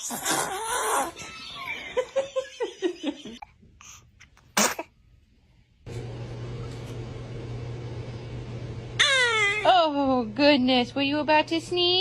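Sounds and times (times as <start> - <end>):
baby sneezing: 0.0 - 0.9, 4.5 - 5.0
laughter: 1.3 - 3.5.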